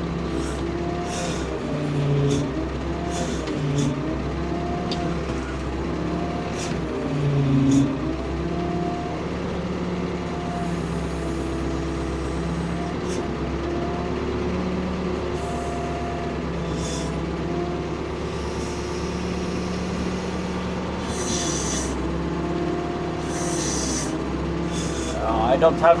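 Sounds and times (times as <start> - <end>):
excavator engine under load: 0.0 - 26.0
short hissing bursts: 16.6 - 17.2, 18.3 - 22.0, 23.2 - 25.3.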